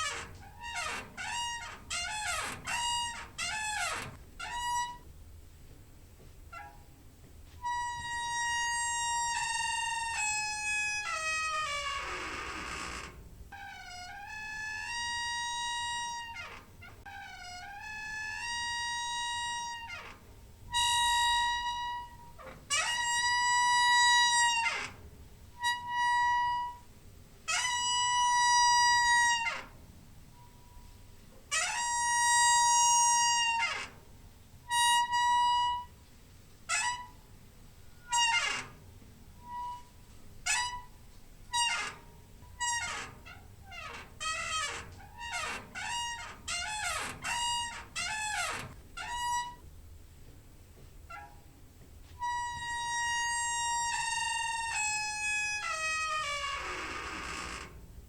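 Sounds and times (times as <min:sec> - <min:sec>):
door hinge squeaking: 0:00.0 - 0:05.1, 0:06.5 - 0:07.0, 0:07.6 - 0:26.9, 0:27.5 - 0:30.9, 0:31.5 - 0:34.0, 0:34.6 - 0:36.0, 0:36.6 - 0:37.2, 0:37.9 - 0:49.7, 0:51.1 - 0:51.5, 0:52.2 - 0:58.0.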